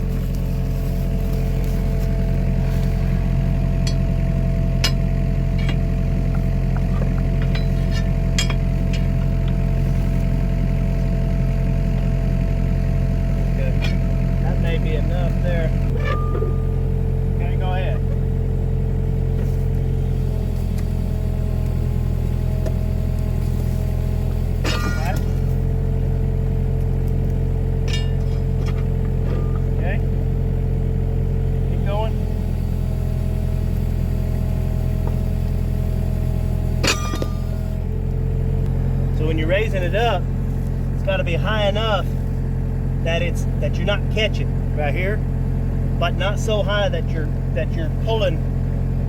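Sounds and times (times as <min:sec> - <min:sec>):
diesel engine idling: 0:00.0 - 0:49.0
thin steady whine: 0:13.4 - 0:42.4.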